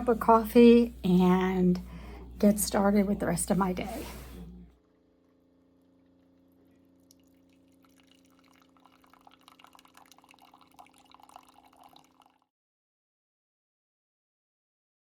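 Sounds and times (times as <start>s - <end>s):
coffee maker hum: 0.0s - 12.4s
coffee dripping and sputtering: 4.9s - 12.5s.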